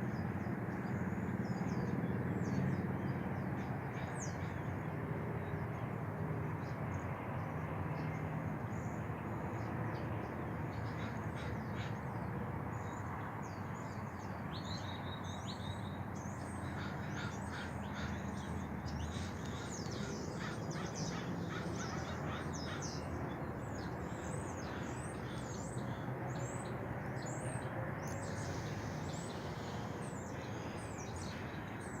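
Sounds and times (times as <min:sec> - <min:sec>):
birds calling: 0:10.8 - 0:12.1, 0:16.2 - 0:32.0.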